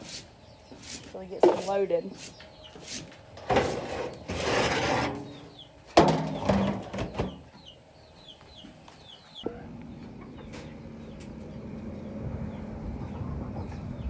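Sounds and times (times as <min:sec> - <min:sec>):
rustling scrape: 0:00.0 - 0:07.2
chickens chirping: 0:00.0 - 0:14.0
metal clank and knocks: 0:03.4 - 0:07.4.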